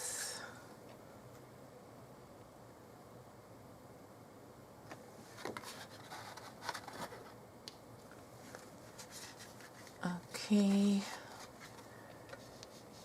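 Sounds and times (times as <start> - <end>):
cards clicking and rustling: 4.9 - 7.4.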